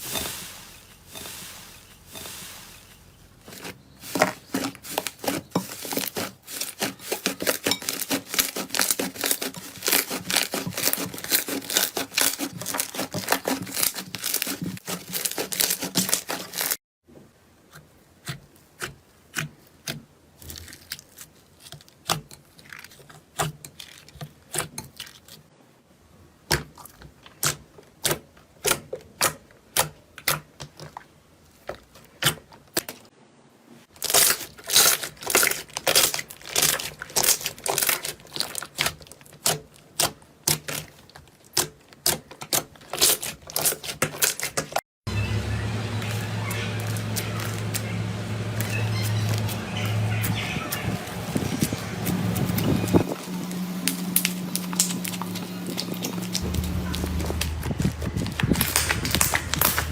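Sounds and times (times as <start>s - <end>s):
slime crackling and clicking: 53.9s - 59.9s.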